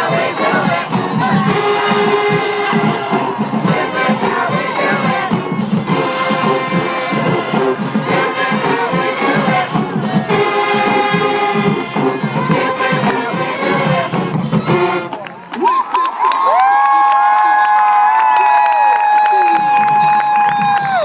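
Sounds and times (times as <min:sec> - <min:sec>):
marching band playing: 0:00.0 - 0:15.8.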